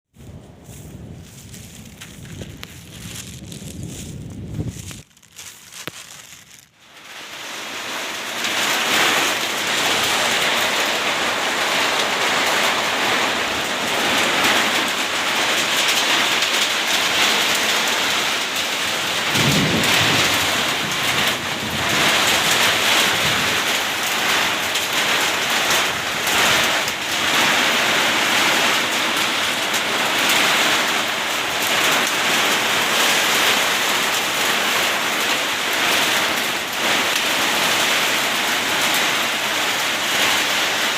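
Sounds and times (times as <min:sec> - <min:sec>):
heavy rain and hail: 0:00.2 - 0:40.9
low thunder rumble: 0:19.0 - 0:30.8.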